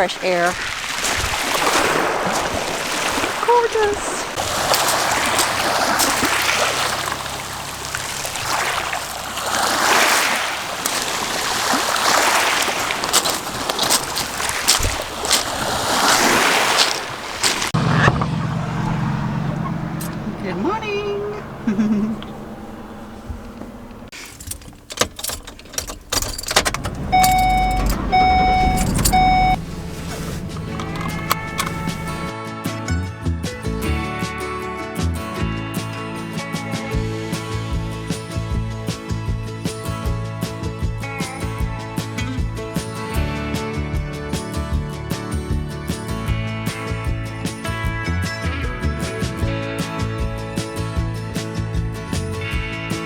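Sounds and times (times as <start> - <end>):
ocean waves washing ashore: 0.0 - 24.3, 26.5 - 32.3
keys jangling: 13.0 - 15.5, 24.2 - 32.3
low steady hum: 17.8 - 32.3
vehicle warning chime beeping: 17.8 - 32.3
clicks: 23.1 - 32.3.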